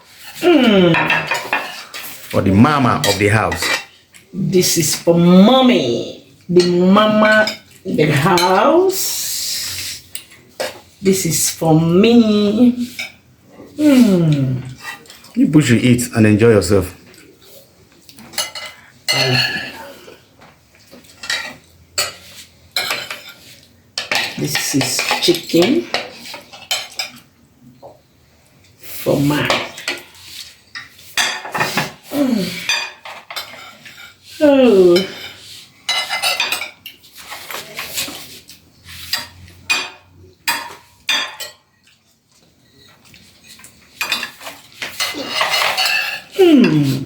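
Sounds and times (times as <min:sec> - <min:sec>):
utensil scraping and clinking on pot: 0:00.0 - 0:04.3, 0:14.6 - 0:15.4, 0:18.2 - 0:20.1, 0:20.8 - 0:27.3, 0:28.8 - 0:41.7, 0:42.7 - 0:47.0.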